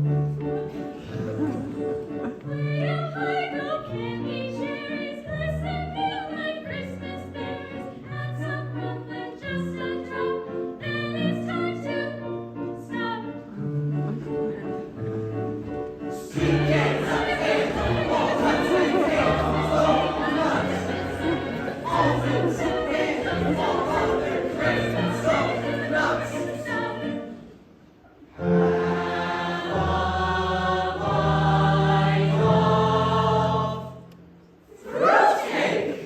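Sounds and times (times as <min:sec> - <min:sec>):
choir singing with accompaniment: 0:16.1 - 0:27.7, 0:28.3 - 0:36.0
audience crowd noise: 0:16.4 - 0:26.7.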